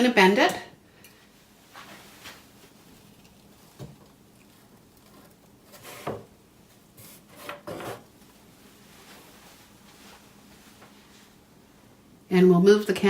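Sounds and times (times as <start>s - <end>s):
rubbing of flower stem: 1.6s - 11.0s
soft handling knocks: 1.8s - 7.2s.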